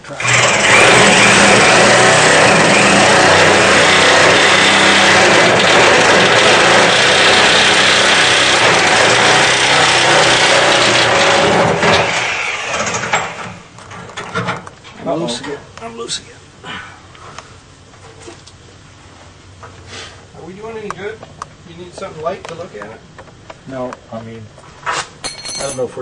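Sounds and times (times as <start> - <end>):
power tool cutting bolt: 0.1 - 13.6.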